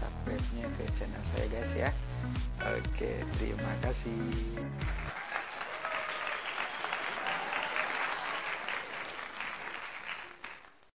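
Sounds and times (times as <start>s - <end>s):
crowd applauding: 4.7s - 10.9s.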